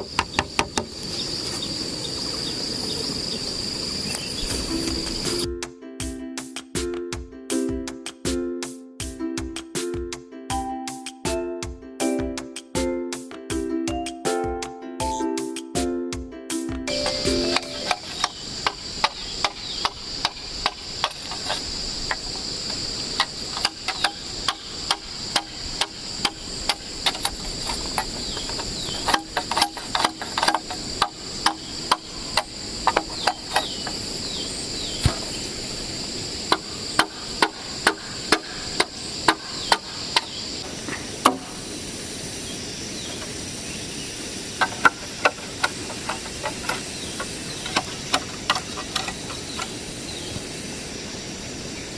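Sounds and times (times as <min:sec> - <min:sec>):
high insect drone: 0:00.0 - 0:05.6, 0:16.9 - 0:51.9
hand tool strikes: 0:16.9 - 0:34.0, 0:36.5 - 0:40.4, 0:41.2 - 0:41.6, 0:44.6 - 0:49.8.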